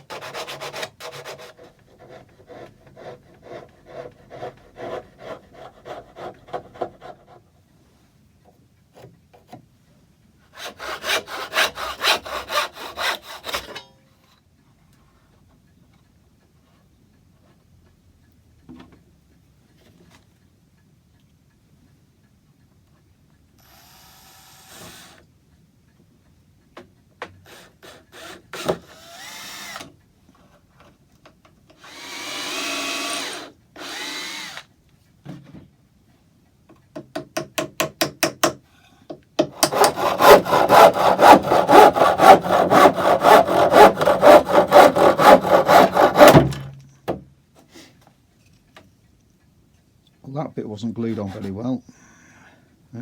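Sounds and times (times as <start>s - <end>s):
fast back-and-forth sawing strokes: 0.0s - 6.4s, 10.6s - 13.8s, 31.9s - 34.6s, 39.6s - 46.5s
wood knocks and scrapes: 44.8s - 47.7s.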